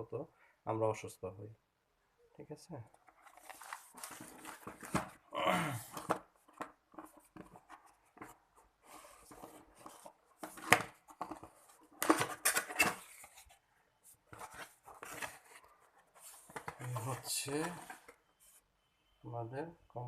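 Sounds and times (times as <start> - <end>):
packaging rustling: 3.0 - 13.6, 14.2 - 18.2.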